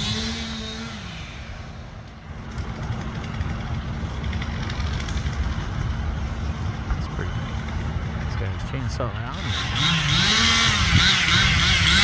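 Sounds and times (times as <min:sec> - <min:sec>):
large vehicle engine idling: 0:01.4 - 0:09.6.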